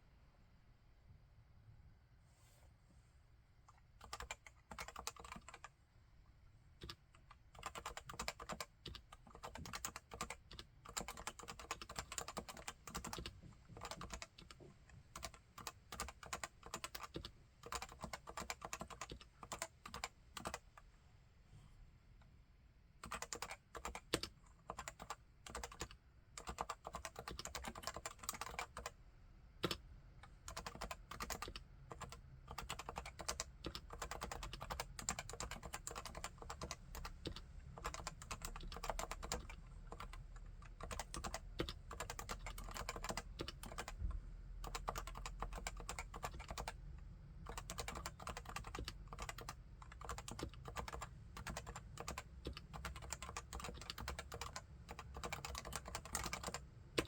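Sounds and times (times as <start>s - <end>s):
keyboard typing: 4.0s - 5.7s, 6.8s - 14.6s, 15.2s - 20.6s, 23.0s - 29.0s, 29.6s - 44.0s, 44.6s - 46.8s, 47.4s - 57.0s.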